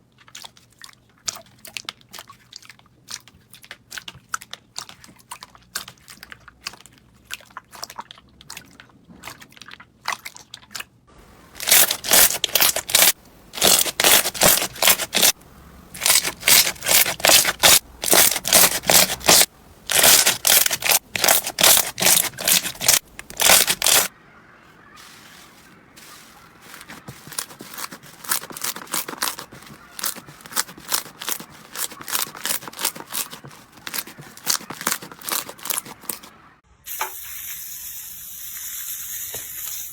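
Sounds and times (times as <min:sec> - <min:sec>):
slime crackling and popping: 0:16.0 - 0:24.1.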